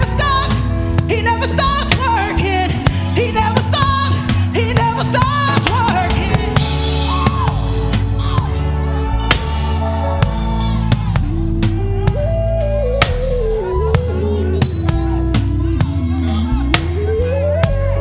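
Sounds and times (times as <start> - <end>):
band with drum kit and bass: 0.0 - 18.0
person singing melismatic line: 5.0 - 18.0.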